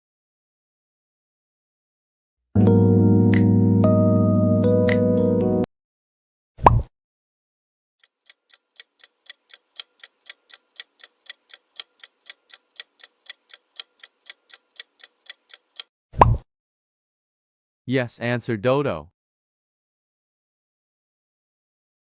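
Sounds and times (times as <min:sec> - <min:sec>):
clock ticking: 0:08.0 - 0:15.9.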